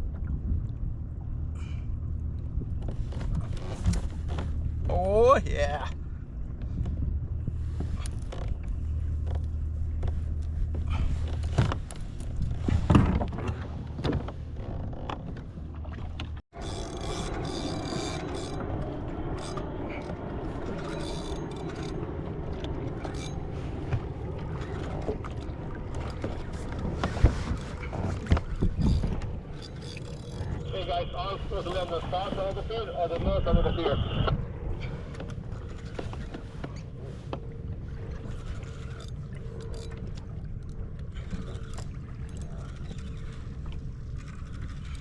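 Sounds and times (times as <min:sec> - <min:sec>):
wind and water noise: 0:00.0 - 0:45.0
knocks and splashes against hull: 0:06.6 - 0:16.4, 0:17.0 - 0:30.6.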